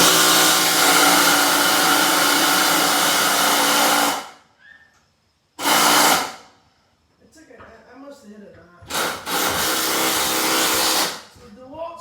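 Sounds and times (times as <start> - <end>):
cordless impact driver buzzing: 0.0 - 4.3, 5.6 - 6.4, 8.9 - 11.3.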